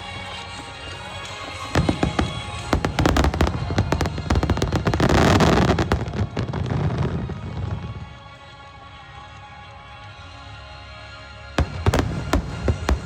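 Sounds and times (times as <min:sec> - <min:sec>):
fireworks cracking: 0:00.0 - 0:08.2, 0:11.6 - 0:13.0
music: 0:00.0 - 0:13.0.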